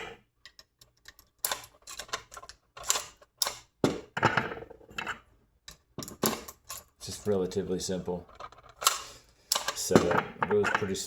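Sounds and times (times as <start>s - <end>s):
brass cases being handled: 0.0s - 11.0s.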